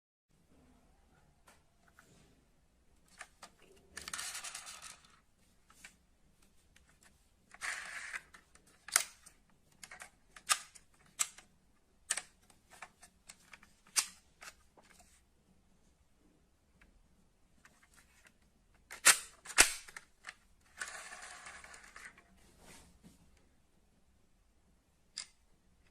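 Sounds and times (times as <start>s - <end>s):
metal toy cars scraping or rolling: 3.2s - 5.2s, 7.5s - 8.4s, 20.7s - 22.3s.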